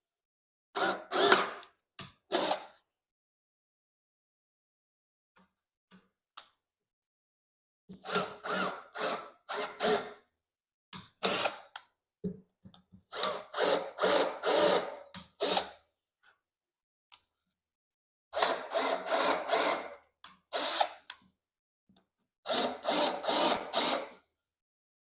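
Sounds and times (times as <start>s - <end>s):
power drill boring into wood: 0.8s - 1.6s, 8.0s - 10.1s, 13.1s - 15.8s, 18.4s - 21.0s, 22.5s - 24.2s.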